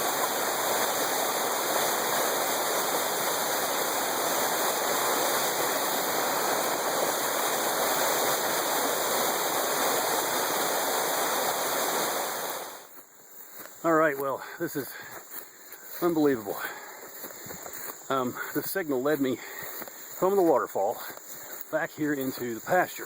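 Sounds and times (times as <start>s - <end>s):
waterfall rushing: 0.0s - 12.9s.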